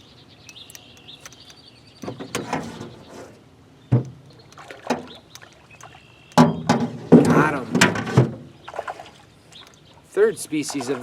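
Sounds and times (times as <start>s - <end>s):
water splashing: 4.2s - 11.0s.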